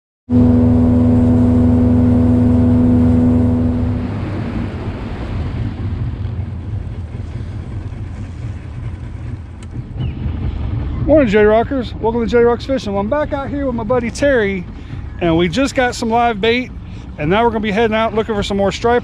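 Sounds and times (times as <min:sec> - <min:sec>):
engine running: 0:00.3 - 0:19.0.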